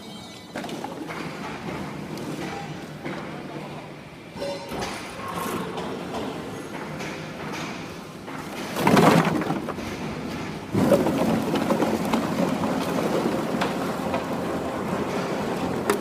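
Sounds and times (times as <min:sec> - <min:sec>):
plastic bottles crunching in baler: 0:08.6 - 0:09.8, 0:10.7 - 0:16.0.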